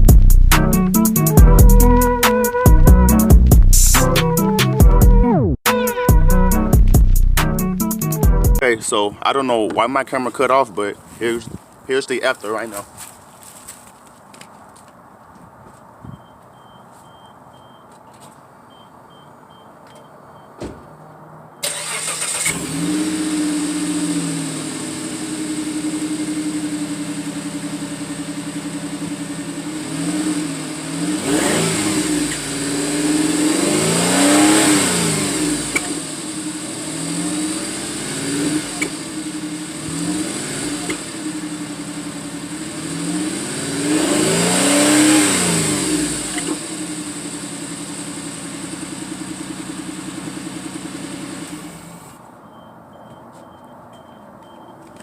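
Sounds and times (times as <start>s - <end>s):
high exhaust whistle: 1.0s - 6.9s
car engine starting and revving: 21.1s - 52.2s.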